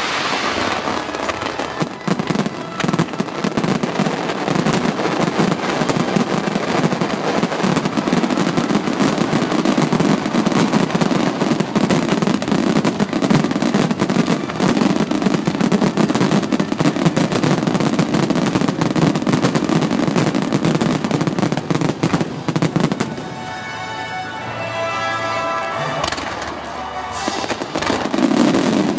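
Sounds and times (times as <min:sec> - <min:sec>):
fireworks bursting and crackling: 0:00.0 - 0:28.9
music: 0:23.0 - 0:28.9.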